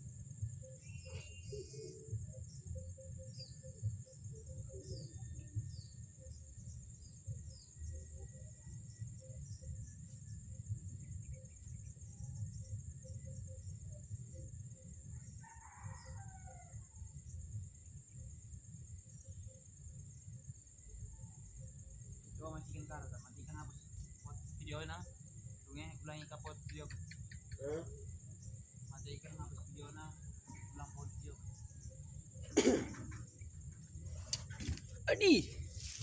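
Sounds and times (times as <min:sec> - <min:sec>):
small bird chirps: 0:00.6 - 0:13.7
rooster crowing: 0:15.3 - 0:17.1.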